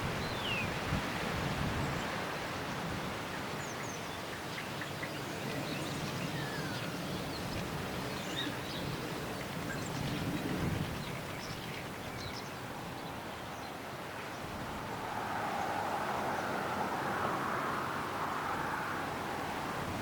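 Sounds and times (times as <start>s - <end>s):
wind blowing in gusts: 0.0s - 20.0s
small birds chirping: 3.6s - 14.5s.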